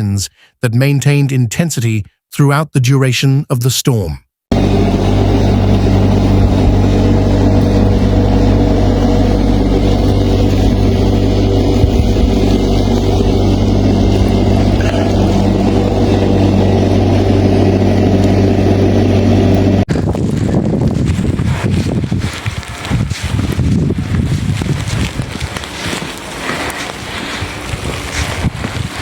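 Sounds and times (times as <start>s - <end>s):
vehicle engine running: 4.5s - 29.0s
wind noise on microphone: 4.5s - 29.0s.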